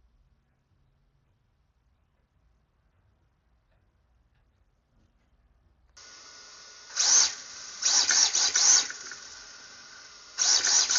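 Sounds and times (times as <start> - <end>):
electric motor whining: 6.0 - 10.9
rc car motor revving in bursts: 6.0 - 10.9.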